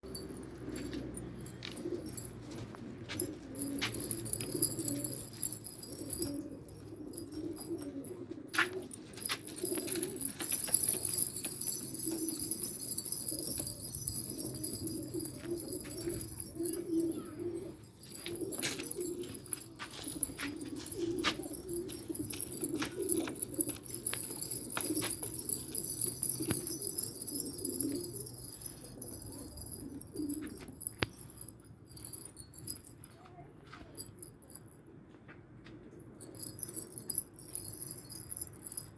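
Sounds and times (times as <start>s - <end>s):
pigeons cooing: 0.1s - 31.2s.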